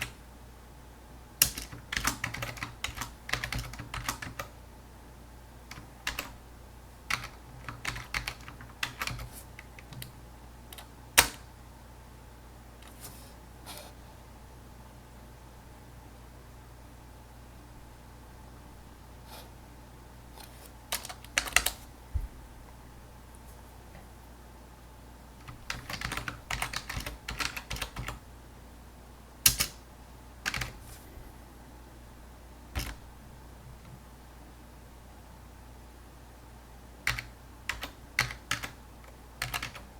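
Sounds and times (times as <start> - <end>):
computer keyboard typing: 0.0 - 0.2, 1.4 - 4.5, 5.7 - 6.4, 7.1 - 10.1, 10.8 - 11.5, 20.9 - 21.8, 25.4 - 28.2, 29.5 - 29.8, 30.4 - 30.8, 32.8 - 33.0, 37.0 - 39.9
faint low hum: 0.0 - 39.9.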